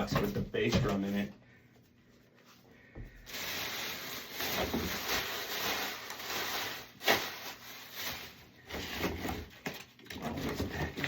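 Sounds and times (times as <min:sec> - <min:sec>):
cardboard packaging rustling: 0:03.2 - 0:11.0.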